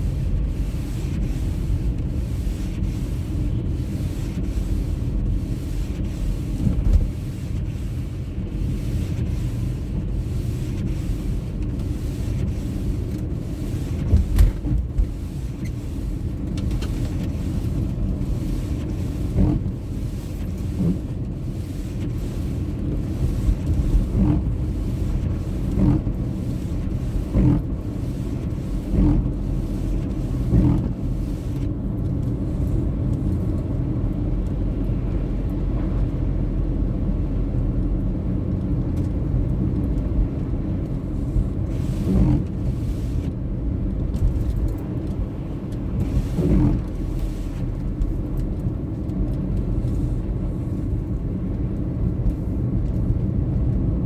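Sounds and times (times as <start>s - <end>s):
car road and engine rumble: 0.0s - 54.0s.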